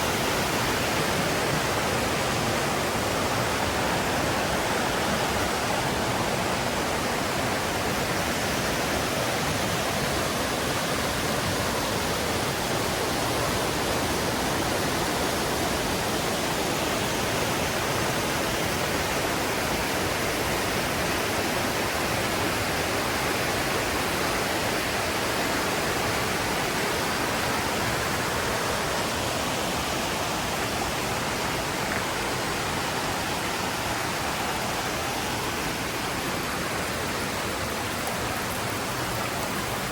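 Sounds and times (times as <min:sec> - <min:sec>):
river rushing over rocks: 0:00.0 - 0:39.9.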